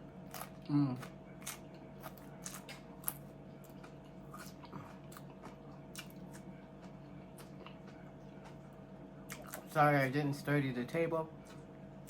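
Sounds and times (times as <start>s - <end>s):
person chewing food: 0.2s - 9.8s.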